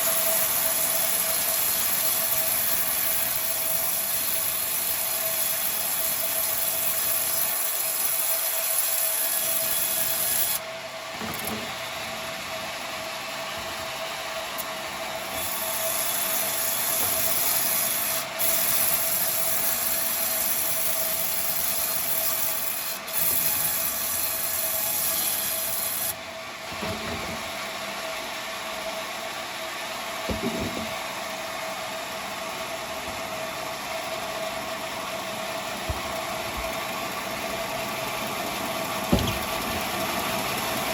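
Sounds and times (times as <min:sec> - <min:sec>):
saw blade cutting hiss: 0:00.0 - 0:10.6, 0:14.5 - 0:26.2
bandsaw whine: 0:13.5 - 0:26.2.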